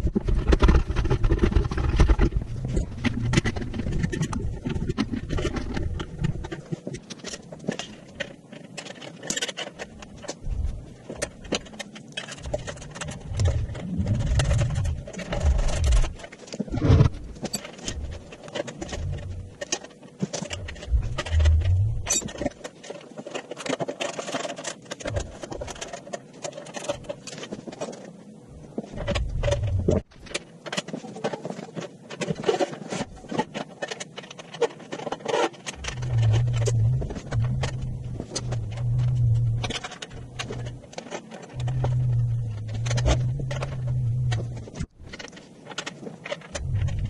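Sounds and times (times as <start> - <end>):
metal parts and tools clattering: 0.2 - 28.2, 28.8 - 47.0
low rumble: 12.5 - 19.6, 20.5 - 22.1, 35.8 - 40.9, 41.6 - 45.2, 46.6 - 47.0.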